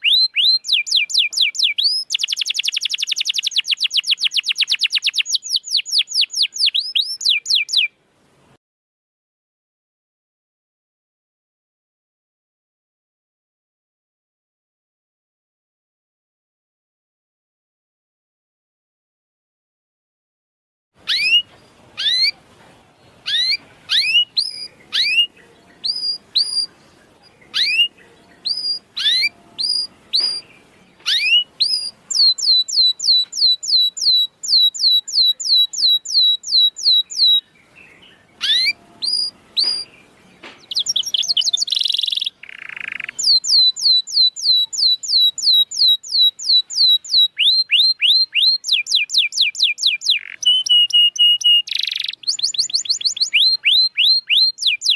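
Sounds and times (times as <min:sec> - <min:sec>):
canary chirping and trilling: 0:00.0 - 0:07.9, 0:21.0 - 0:22.4, 0:23.0 - 0:54.9.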